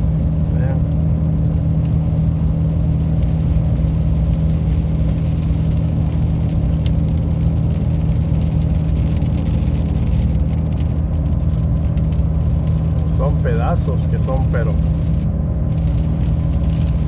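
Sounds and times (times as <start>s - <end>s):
car interior engine and road hum: 0.0s - 17.0s.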